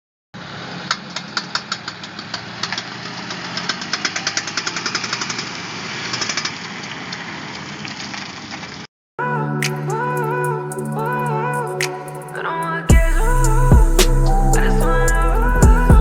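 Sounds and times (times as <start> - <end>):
engine clicking and knocking: 0.9 - 6.6
car engine humming: 12.9 - 16.0.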